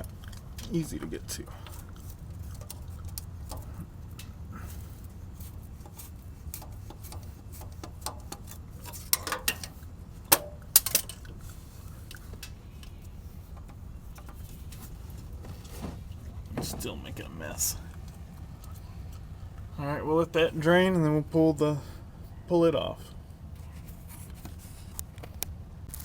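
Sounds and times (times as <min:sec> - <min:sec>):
low steady hum: 0:00.0 - 0:26.0
metal tools clinking: 0:08.0 - 0:11.4.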